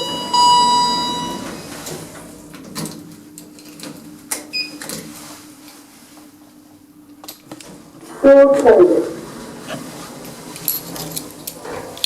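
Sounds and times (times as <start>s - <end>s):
lift low hum: 0.0s - 2.6s.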